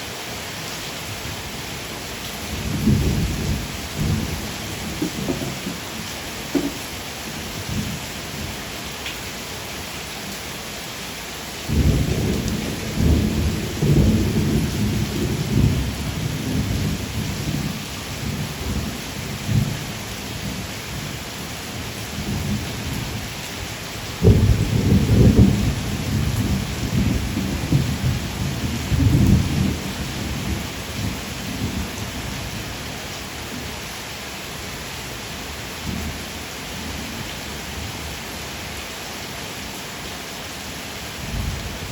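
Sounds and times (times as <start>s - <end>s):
steady rain: 0.0s - 41.9s
low rolls of thunder: 2.5s - 7.0s, 11.7s - 18.9s, 24.2s - 31.8s.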